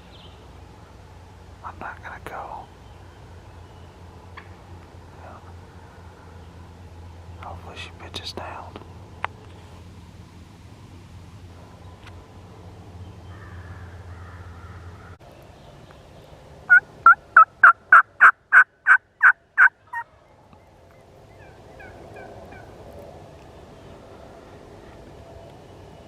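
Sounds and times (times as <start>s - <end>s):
hen turkey yelps: 16.7s - 20.1s.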